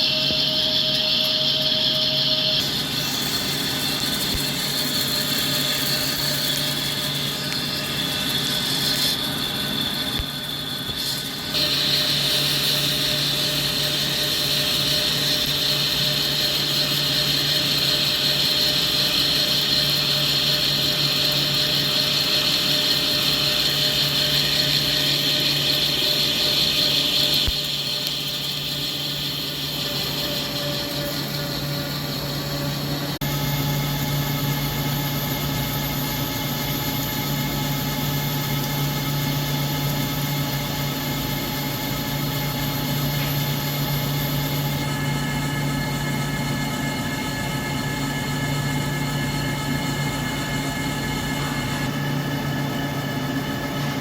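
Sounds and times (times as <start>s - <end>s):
hissing cutting noise: 0.0s - 37.6s
lathe motor hum: 0.0s - 54.0s.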